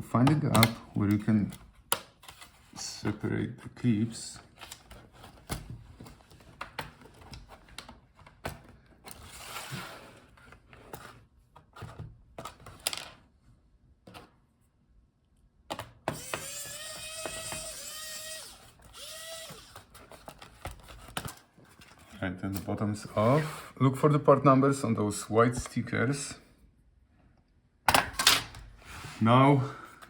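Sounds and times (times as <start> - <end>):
plastic clips clicking and snapping: 0.2 - 2.1.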